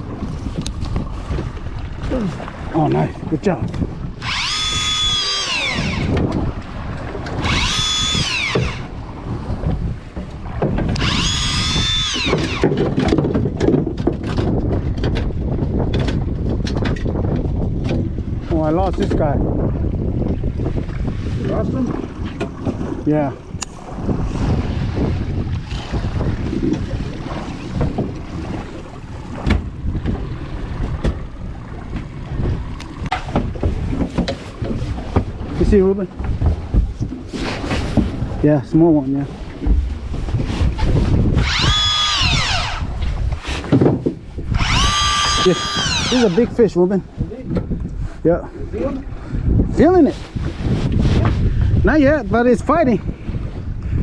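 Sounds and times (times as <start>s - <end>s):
wind rumble on microphone: 0.0s - 54.0s
electric motor winding fishing line: 4.2s - 6.3s, 7.3s - 9.0s, 10.9s - 12.8s, 25.6s - 26.0s, 41.4s - 43.4s, 44.5s - 46.6s.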